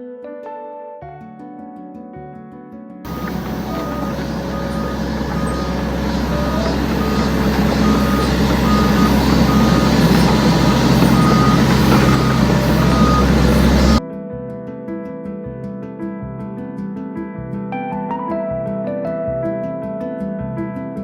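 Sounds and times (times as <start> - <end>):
acoustic guitar music: 3.1 - 14.0
excavator engine running: 3.1 - 14.0
travel alarm beeping: 3.1 - 14.0.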